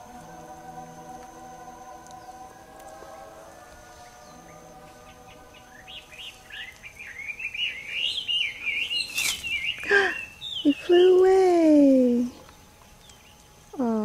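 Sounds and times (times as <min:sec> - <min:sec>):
held musical drone: 0:00.0 - 0:08.8
small birds chirping: 0:01.6 - 0:14.0.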